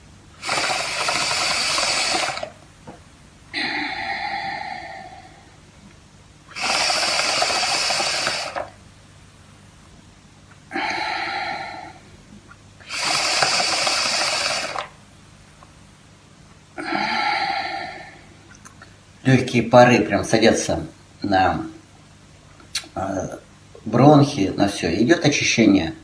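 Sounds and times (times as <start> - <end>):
air bubbling through liquid: 0.4 - 2.6, 6.5 - 8.8, 10.8 - 15.0
short breaths: 0.4 - 2.6, 3.6 - 5.6, 6.5 - 8.7, 10.7 - 12.2, 12.8 - 14.9, 16.8 - 19.1.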